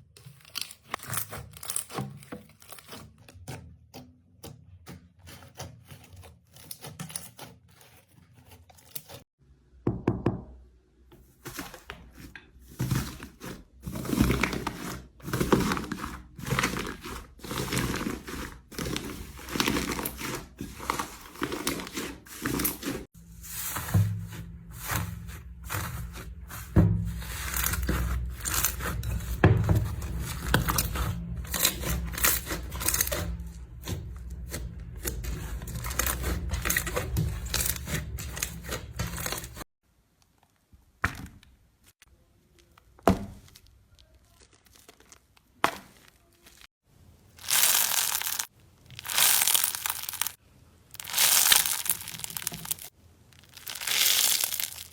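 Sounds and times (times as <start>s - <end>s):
slime squishing and crackling: 12.8s - 23.2s, 24.8s - 39.7s, 42.6s - 46.8s, 47.4s - 54.9s.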